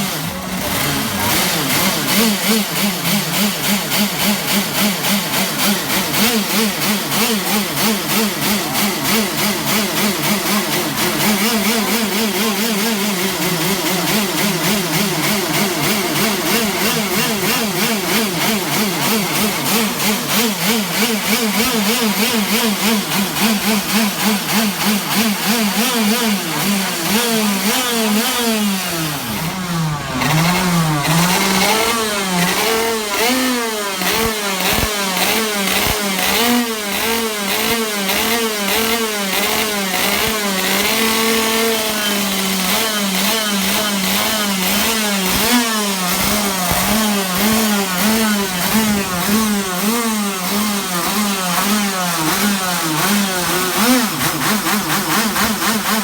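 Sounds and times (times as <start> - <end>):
kart engine revving: 0.0 - 56.0.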